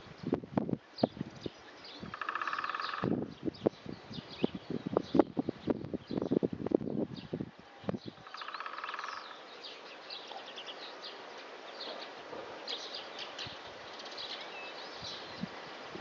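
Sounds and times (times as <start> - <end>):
small birds chirping: 0.0 - 15.7
woodpecker drumming: 2.0 - 3.3, 8.1 - 9.6.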